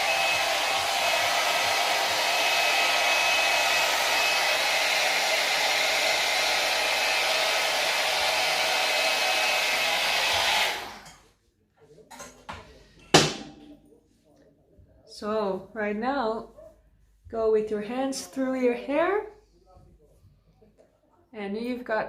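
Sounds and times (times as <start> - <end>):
hot air brush blowing: 0.0 - 11.1.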